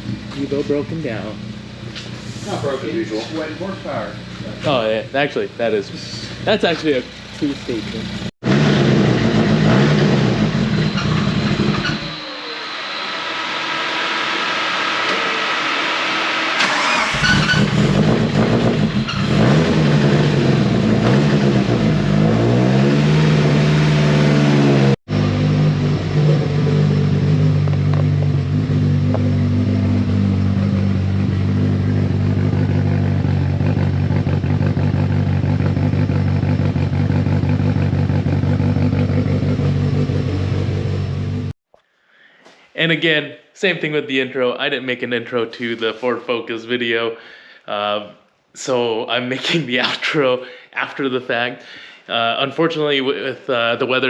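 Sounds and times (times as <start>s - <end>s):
car engine revving: 0.0s - 41.6s.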